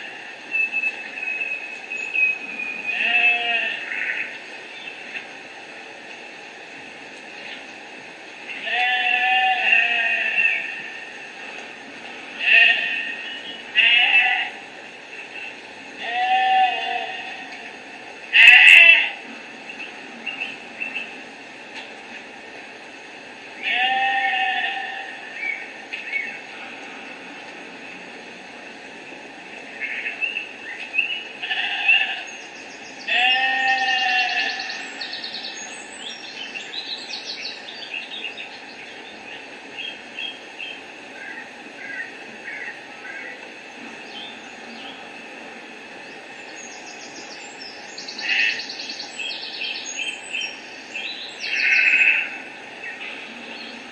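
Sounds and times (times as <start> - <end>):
sheep bleating through small speaker: 2.9 - 4.3, 8.6 - 10.9, 12.4 - 14.6, 16.0 - 17.5, 18.3 - 19.2, 23.6 - 25.2, 31.4 - 32.3, 33.1 - 34.7, 51.5 - 52.4
bird chirps and calls: 46.4 - 52.2.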